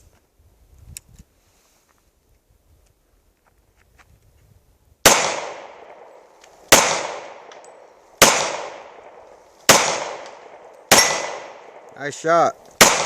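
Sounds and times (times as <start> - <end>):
pistol shots with echo: 5.0 - 13.0.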